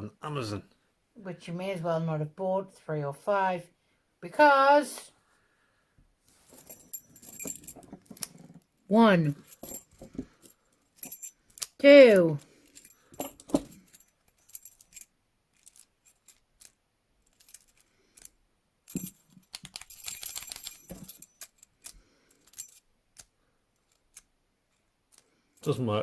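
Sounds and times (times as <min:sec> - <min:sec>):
keys jingling: 0:06.4 - 0:08.5, 0:09.3 - 0:16.5, 0:18.9 - 0:24.3
key rattling in padlock: 0:06.6 - 0:08.5, 0:09.4 - 0:11.8, 0:12.7 - 0:24.3.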